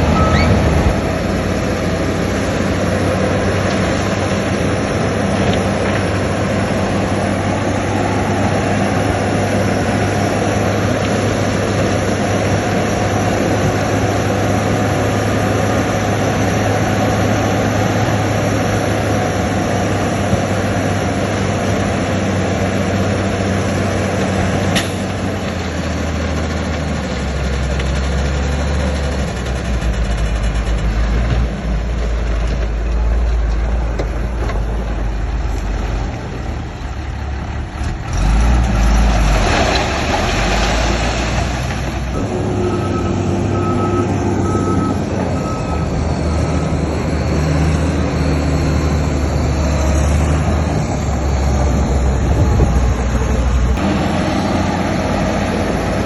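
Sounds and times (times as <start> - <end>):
reversing alarm beeps: 0.0 - 0.8, 42.2 - 46.9
heavy machinery diesel engines: 0.0 - 56.0.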